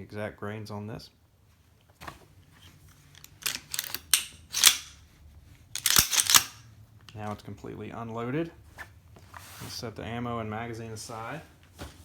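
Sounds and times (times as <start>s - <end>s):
pistol clicks and clacks: 3.2s - 5.0s, 5.8s - 6.6s.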